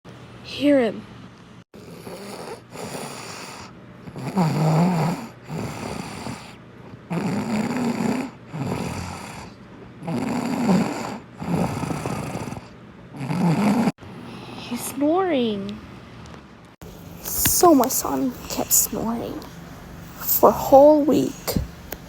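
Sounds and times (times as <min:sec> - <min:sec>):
child snoring: 0:01.8 - 0:14.6, 0:17.1 - 0:19.5, 0:20.1 - 0:21.7.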